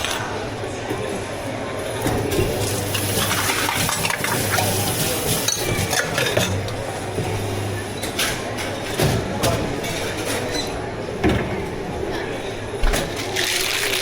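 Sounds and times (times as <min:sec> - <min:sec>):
utensils clinking against cups: 0:02.0 - 0:10.9.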